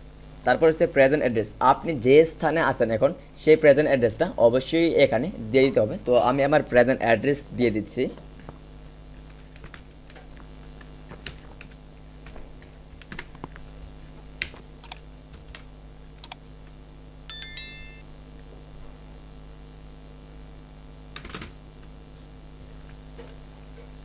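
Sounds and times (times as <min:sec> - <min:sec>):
faint steady hum: 0:00.0 - 0:24.0
keyboard typing clicks: 0:14.8 - 0:15.0, 0:16.2 - 0:16.4
bright multi-tone ding: 0:17.3 - 0:18.0.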